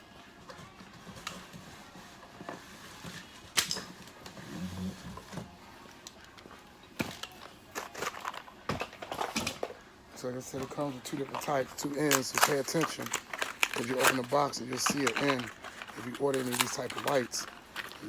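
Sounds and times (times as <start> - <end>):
handling noise: 6.2 - 18.0
plastic parts clicking: 10.6 - 18.0.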